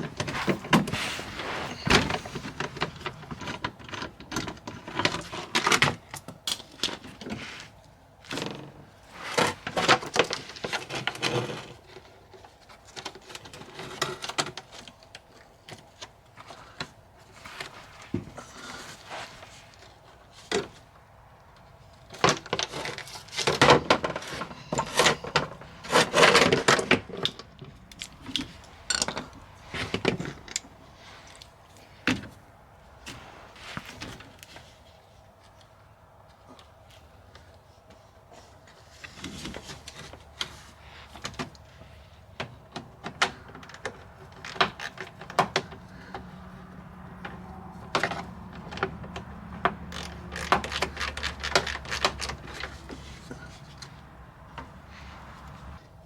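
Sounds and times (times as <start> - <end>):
tools and bolts clinking: 23.9 - 31.4.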